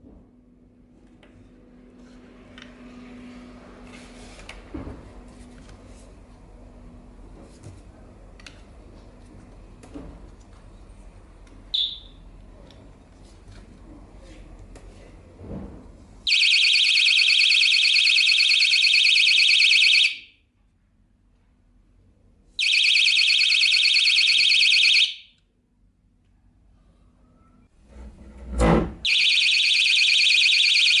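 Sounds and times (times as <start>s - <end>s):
pulsing high-pitched door alarm: 11.8s - 12.1s, 16.3s - 20.3s, 22.6s - 25.3s, 29.1s - 31.0s.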